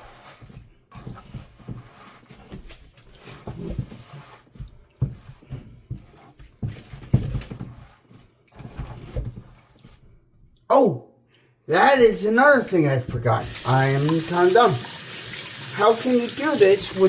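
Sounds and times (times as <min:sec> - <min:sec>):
hands kneading wet meat: 0:00.0 - 0:10.6.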